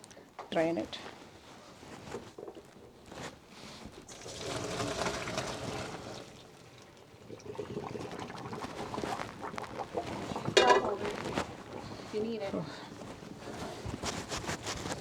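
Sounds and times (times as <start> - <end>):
water poured off noodles: 4.1 - 11.6
pot knocking: 10.5 - 11.3.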